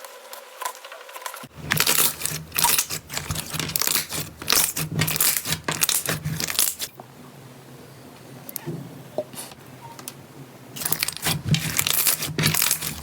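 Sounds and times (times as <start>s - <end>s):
slime crinkling and crackling: 0.7s - 6.9s, 10.8s - 13.0s.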